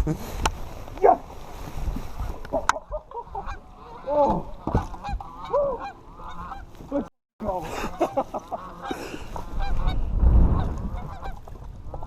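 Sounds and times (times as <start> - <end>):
geese honking: 2.2 - 7.0, 7.8 - 10.0, 10.9 - 11.4.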